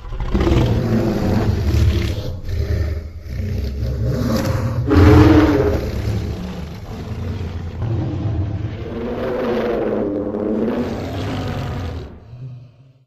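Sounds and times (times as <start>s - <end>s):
monster growl: 0.0s - 13.0s.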